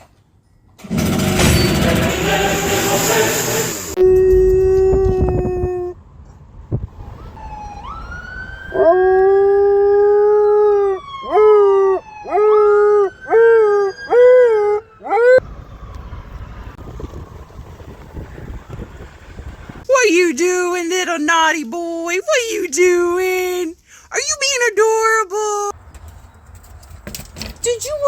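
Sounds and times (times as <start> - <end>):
faint siren wailing: 3.9 - 23.5
dog howling: 8.7 - 15.4.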